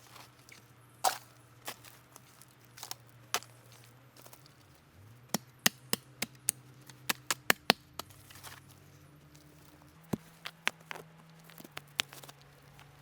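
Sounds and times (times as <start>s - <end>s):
wood being chopped: 5.3s - 8.6s, 10.1s - 12.3s.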